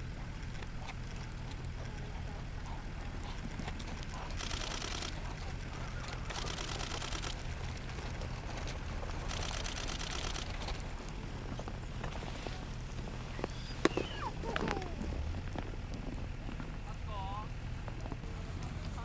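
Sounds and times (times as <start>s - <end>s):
rapid high-pitched clicking: 0.3s - 11.2s.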